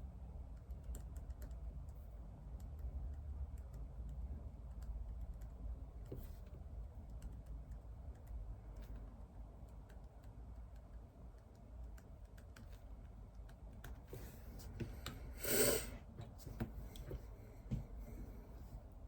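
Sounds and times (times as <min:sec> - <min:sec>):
typing on computer keyboard: 0:00.2 - 0:06.1, 0:06.8 - 0:09.0, 0:09.6 - 0:14.0.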